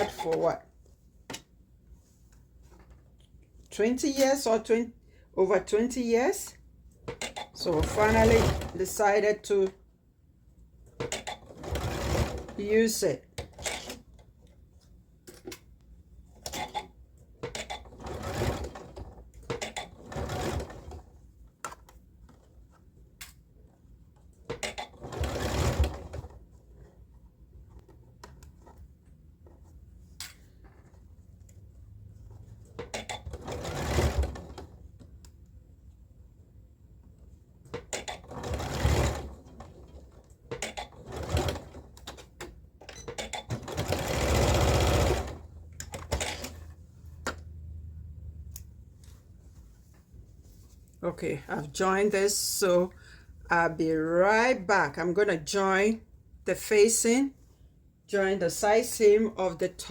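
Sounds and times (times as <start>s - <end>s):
sewing machine stitching: 7.1s - 9.3s, 10.9s - 14.0s, 16.4s - 21.2s, 24.5s - 27.0s, 32.1s - 35.0s, 37.8s - 46.8s.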